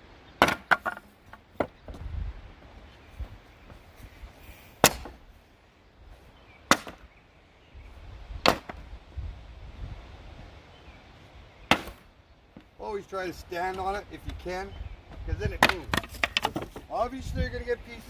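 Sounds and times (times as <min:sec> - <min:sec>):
sledgehammer striking wooden pallet: 0:00.4 - 0:01.0, 0:04.8 - 0:05.2, 0:06.7 - 0:07.0, 0:08.4 - 0:08.8, 0:11.7 - 0:12.0.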